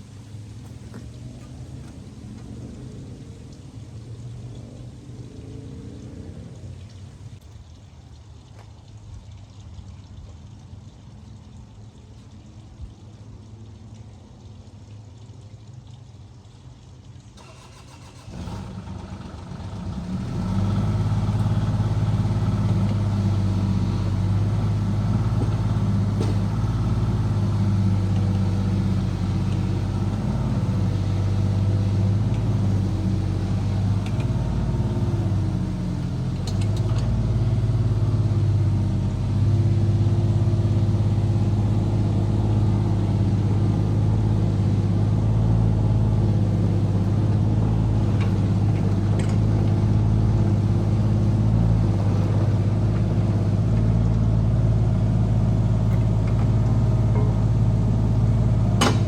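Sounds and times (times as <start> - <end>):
small diesel engine running: 17.4 - 59.0.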